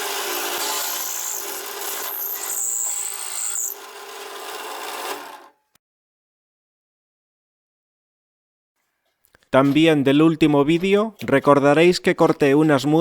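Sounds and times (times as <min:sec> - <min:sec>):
drill press cutting wood: 0:00.0 - 0:05.5.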